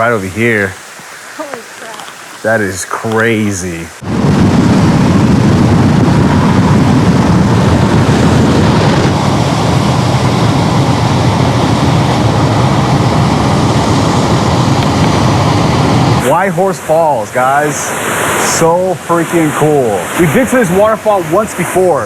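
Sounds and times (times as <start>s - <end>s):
waterfall roaring: 0.0s - 22.0s.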